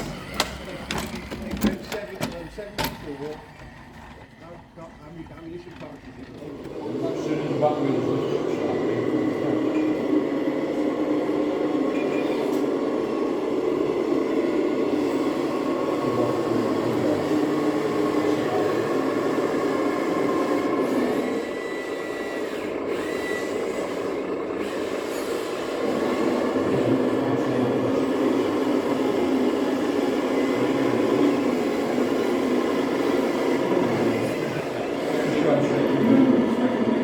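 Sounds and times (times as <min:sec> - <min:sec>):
rc truck motors running: 0:11.7 - 0:37.0.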